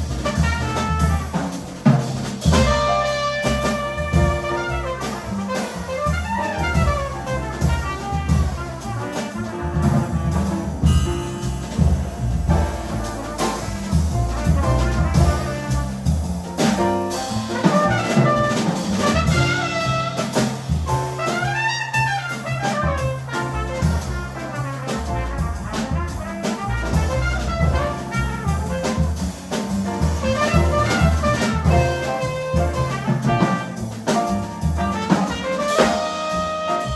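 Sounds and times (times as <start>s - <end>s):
double bass notes: 0.0s - 36.9s
drum and cymbal strikes: 0.0s - 36.9s
trumpet line: 0.2s - 1.4s, 2.5s - 10.7s, 12.9s - 16.0s, 17.5s - 20.4s, 21.1s - 29.1s, 30.2s - 34.0s, 34.8s - 36.9s
piano chords: 2.5s - 21.2s, 23.5s - 36.9s.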